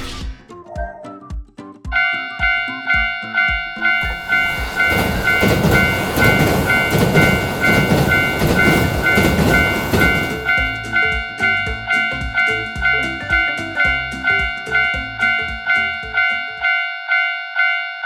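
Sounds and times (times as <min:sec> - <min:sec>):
railroad crossing bell ringing: 0:02.0 - 0:18.0
train rumble and rail clatter: 0:03.8 - 0:12.1.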